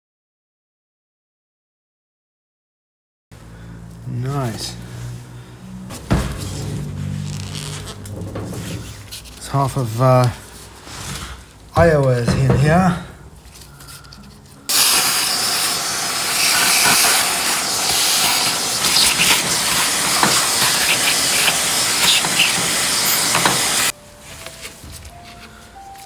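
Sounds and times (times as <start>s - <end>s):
compressed air blow gun hissing: 14.7s - 23.9s.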